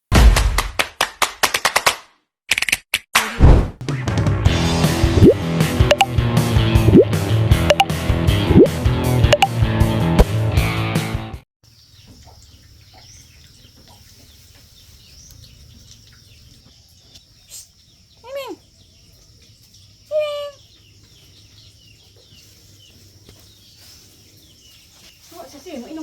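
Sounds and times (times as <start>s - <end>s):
small birds chirping: 11.6s - 26.0s.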